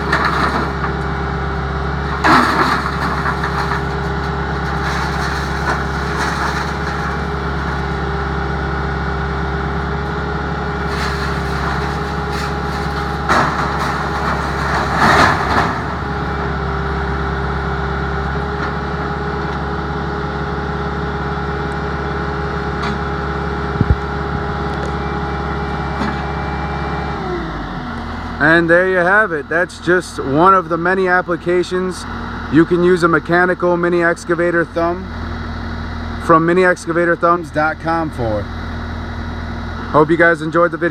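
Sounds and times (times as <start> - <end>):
skid steer engine whining: 0.0 - 40.9
loud clattering bursts: 2.1 - 7.8, 10.8 - 16.3.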